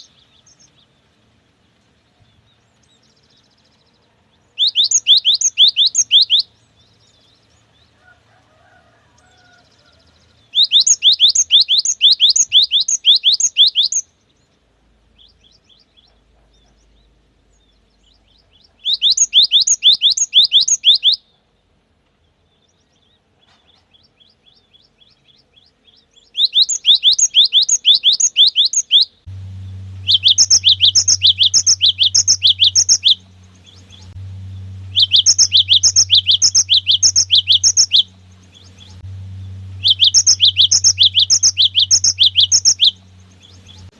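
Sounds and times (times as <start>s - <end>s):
bird singing whistled notes: 0.0s - 1.0s, 2.2s - 7.9s, 9.2s - 14.5s, 15.2s - 21.3s, 24.0s - 43.9s
low steady hum: 29.1s - 43.9s.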